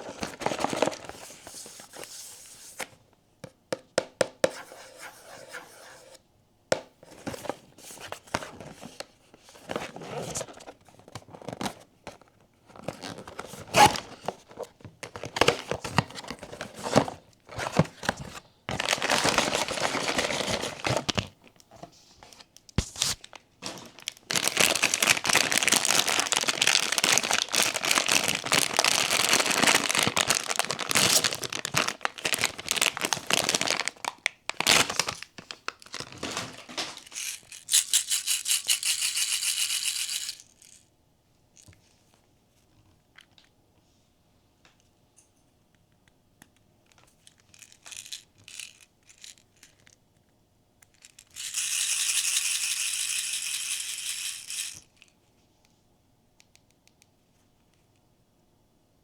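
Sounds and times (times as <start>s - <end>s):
plastic packaging crinkling and tearing: 0.0s - 1.3s, 12.8s - 21.3s, 22.8s - 37.9s.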